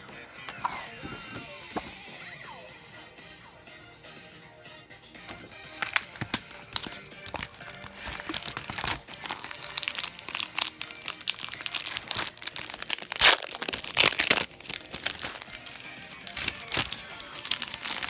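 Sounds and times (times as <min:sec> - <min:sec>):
background music: 0:00.0 - 0:18.0
packaging crinkling and rustling: 0:05.3 - 0:18.0.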